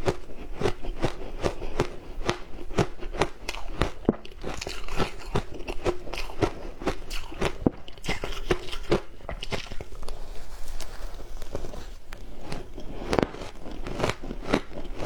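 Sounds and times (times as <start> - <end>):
chewing: 0.0 - 15.0
ice crunching between teeth: 0.0 - 15.0.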